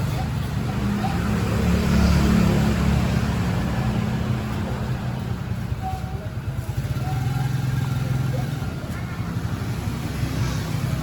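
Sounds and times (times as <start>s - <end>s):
motorcycle engine idling: 3.1s - 11.0s.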